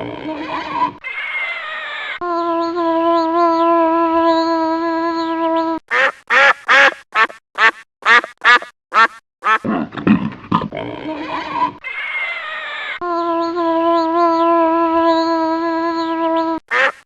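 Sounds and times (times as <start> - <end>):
low animal grunts: 9.6 - 11.8.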